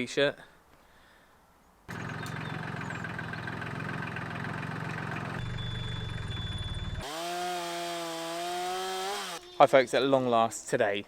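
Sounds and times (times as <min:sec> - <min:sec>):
engine idling: 0:01.9 - 0:07.2.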